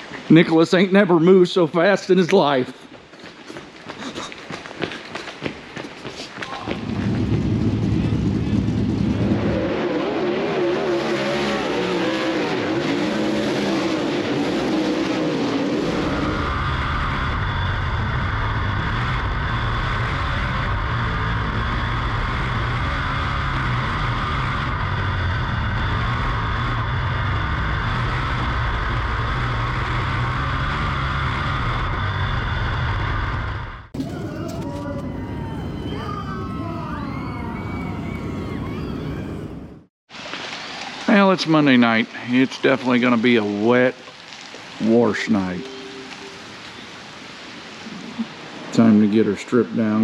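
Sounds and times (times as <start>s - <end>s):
race car engine running: 6.8s - 34.0s.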